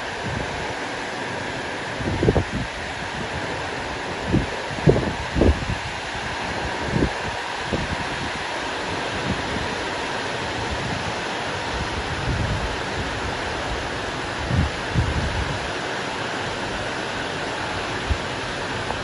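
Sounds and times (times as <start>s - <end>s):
heavy rain pouring: 0.0s - 19.0s
wind bumps on microphone: 0.2s - 0.6s, 2.0s - 8.4s, 10.6s - 13.8s, 14.4s - 15.7s.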